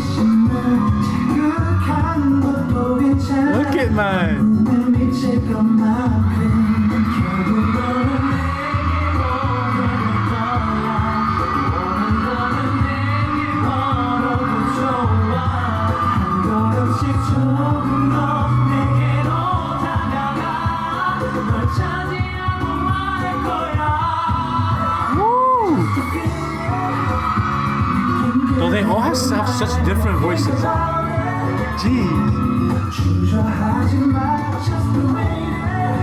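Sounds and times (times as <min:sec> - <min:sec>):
backing track with steady beat: 0:00.0 - 0:04.9
men singing pop song: 0:00.0 - 0:25.1, 0:28.2 - 0:36.0.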